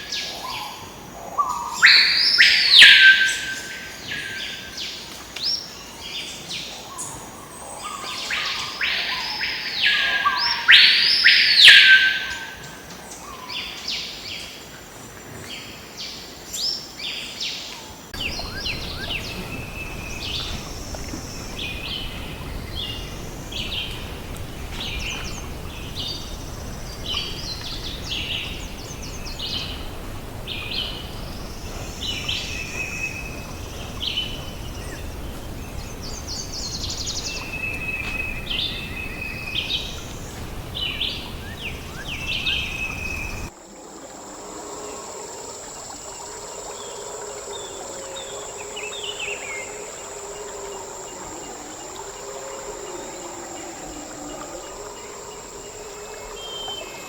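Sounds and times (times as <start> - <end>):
birds calling: 18.2 - 43.5
soft bird chirps: 18.2 - 43.5
low background hiss: 18.2 - 57.0.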